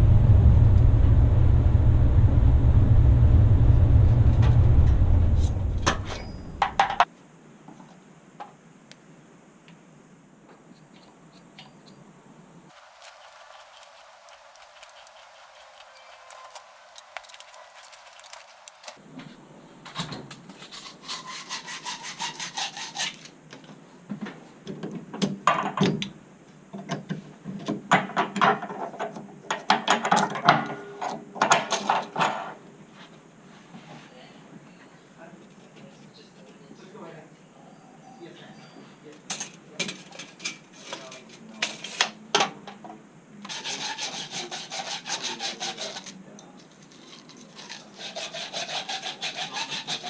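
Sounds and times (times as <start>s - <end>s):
hand tool scraping: 12.7s - 19.0s, 46.9s - 50.0s.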